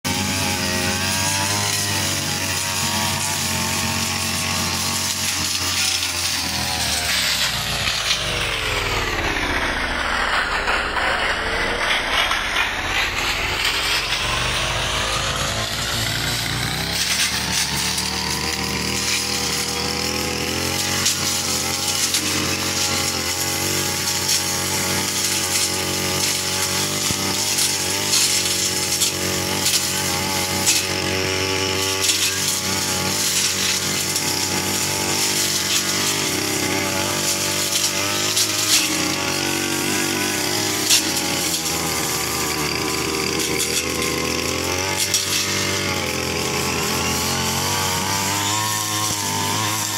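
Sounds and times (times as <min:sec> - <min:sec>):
brush cutter engine running: 0:00.0 - 0:49.9.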